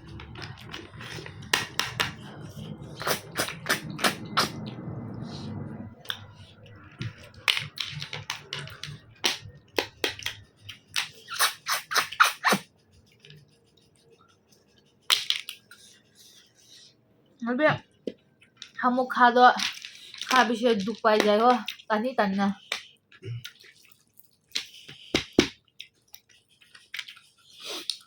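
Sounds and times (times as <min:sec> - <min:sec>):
eating noises with wet smacks: 0:22.6 - 0:28.0.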